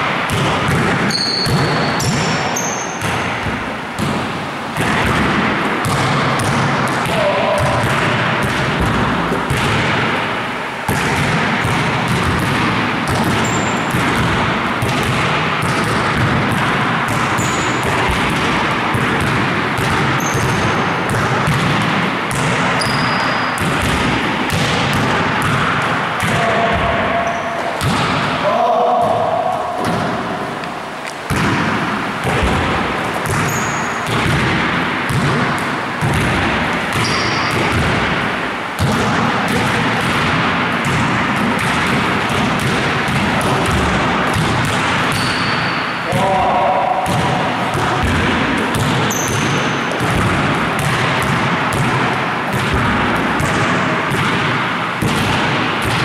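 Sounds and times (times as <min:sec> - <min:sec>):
basketballs bouncing: 0:00.0 - 0:56.0
short high squeaks: 0:01.1 - 0:03.0, 0:13.4 - 0:13.9, 0:22.8 - 0:23.5, 0:33.5 - 0:34.0, 0:37.0 - 0:37.5, 0:45.2 - 0:45.8.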